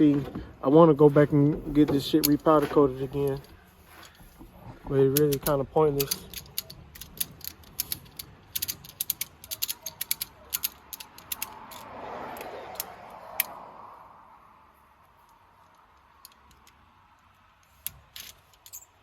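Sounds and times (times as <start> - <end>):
ratchet clicking: 5.2 - 13.6.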